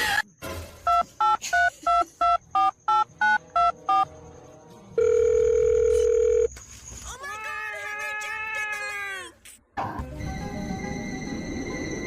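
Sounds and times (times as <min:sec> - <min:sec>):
steady telephone tone: 0:05.0 - 0:06.5.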